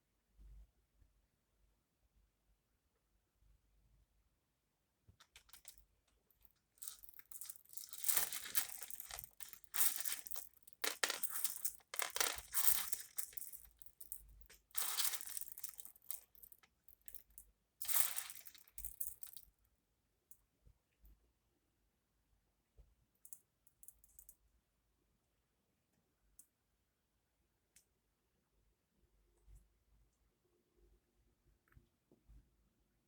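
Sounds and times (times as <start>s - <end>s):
beads rattling together: 5.2s - 19.5s.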